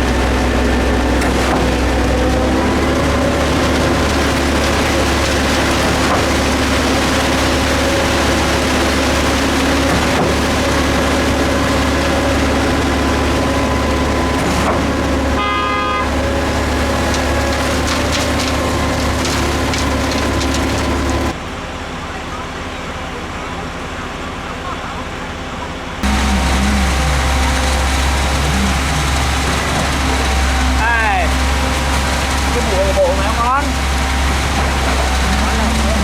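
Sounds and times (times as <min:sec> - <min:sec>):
diesel engine rumbling: 0:00.0 - 0:36.0
short horn toot: 0:15.4 - 0:16.2.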